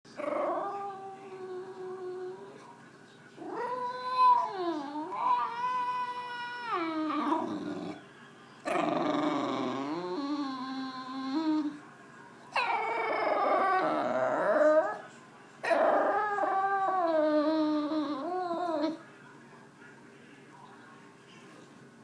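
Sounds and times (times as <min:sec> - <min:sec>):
dog whining and howling: 0:00.2 - 0:02.6, 0:03.4 - 0:08.0, 0:08.7 - 0:11.8, 0:12.6 - 0:15.0, 0:15.6 - 0:19.0.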